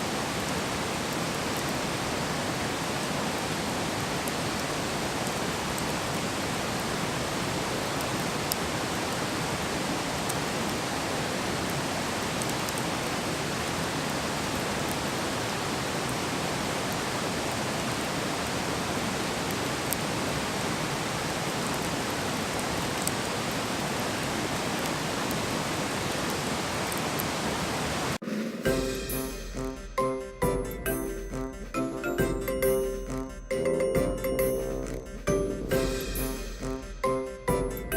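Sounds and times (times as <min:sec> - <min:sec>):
music: 0:28.3 - 0:37.9.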